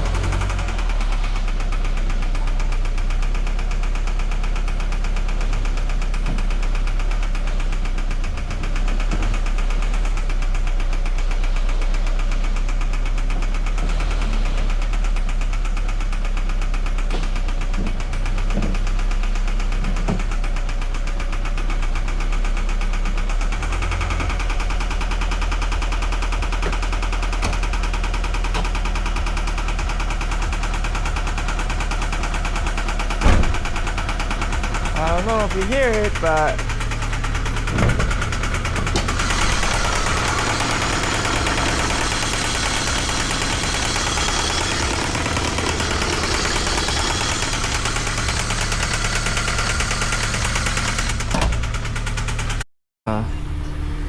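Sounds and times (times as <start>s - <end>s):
engine knocking: 0.0s - 52.6s
car engine idling: 0.0s - 54.0s.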